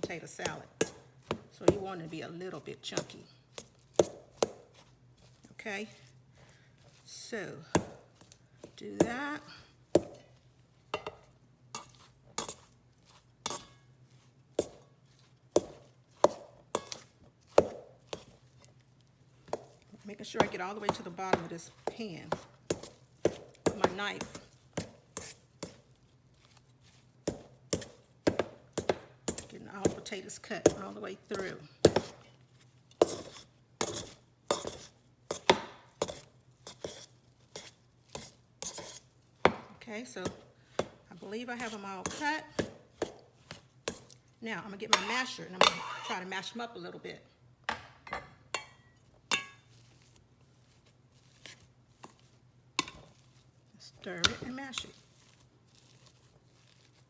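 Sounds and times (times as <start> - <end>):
knife chopping against pan: 0.0 - 2.0, 2.8 - 4.9, 7.6 - 10.3, 14.5 - 18.4, 19.5 - 25.9, 27.3 - 32.3, 33.0 - 44.2, 44.9 - 46.2, 52.8 - 53.2, 54.0 - 55.0.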